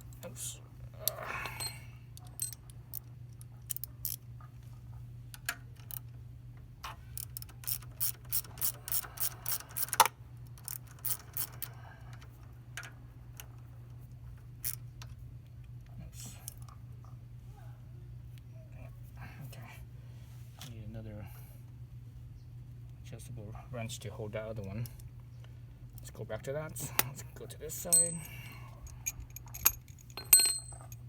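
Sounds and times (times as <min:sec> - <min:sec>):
hand ratchet clicking: 0:29.0 - 0:30.7.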